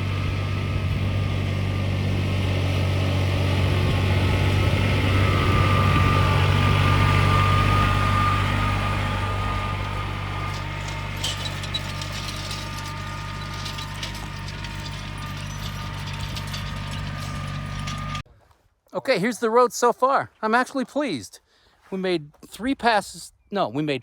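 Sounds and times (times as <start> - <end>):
vehicle engine humming: 0.0 - 18.2
light clicks and rattles: 10.5 - 18.2.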